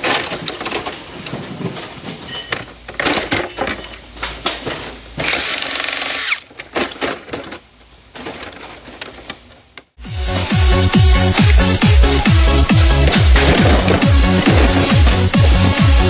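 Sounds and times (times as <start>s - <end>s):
power tool running: 5.2s - 6.5s
metal knocks and scrapes: 12.7s - 16.0s.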